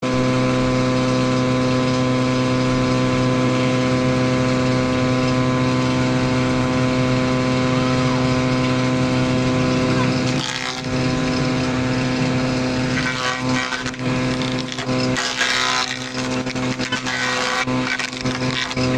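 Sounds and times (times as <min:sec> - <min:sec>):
electric planer motor hum: 0:00.0 - 0:18.9
rough planing bursts: 0:00.0 - 0:18.9.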